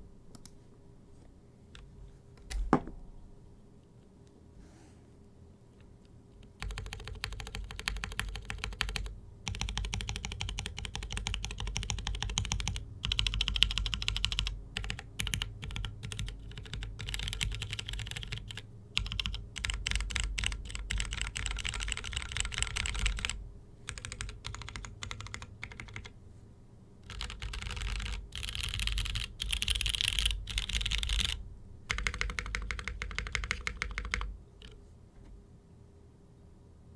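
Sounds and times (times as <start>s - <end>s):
mechanical keyboard typing: 6.4s - 26.1s, 27.0s - 34.8s.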